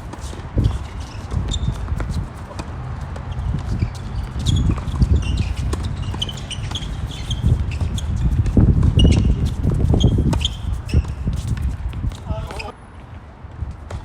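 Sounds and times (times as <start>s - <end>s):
tennis ball strikes and bounces: 0.0s - 12.7s
shoes squeaking on court: 0.0s - 14.0s
wind rumbling on microphone: 0.0s - 14.0s.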